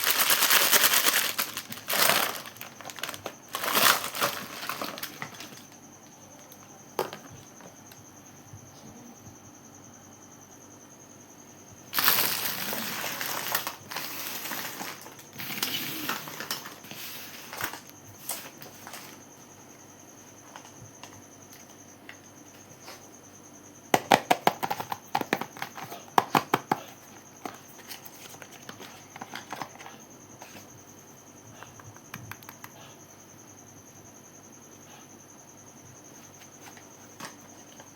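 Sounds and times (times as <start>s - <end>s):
packaging rustling and crinkling: 0.0s - 5.8s, 12.0s - 16.9s.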